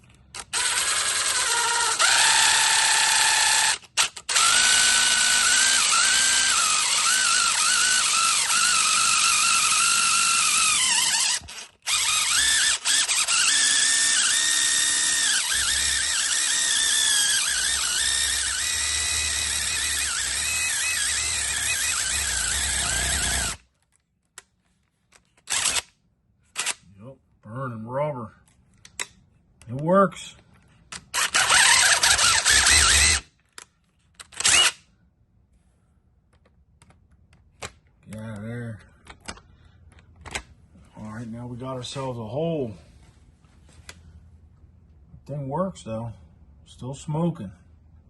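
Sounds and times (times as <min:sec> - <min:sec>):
power drill grinding rubber: 0:00.3 - 0:23.7, 0:25.4 - 0:25.9, 0:31.0 - 0:33.4, 0:34.4 - 0:34.8.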